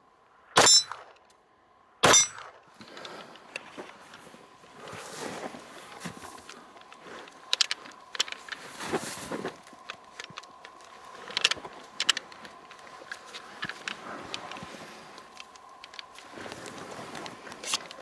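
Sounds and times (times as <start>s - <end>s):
pistol and magazines clicking: 6.4s - 8.7s, 9.6s - 18.0s.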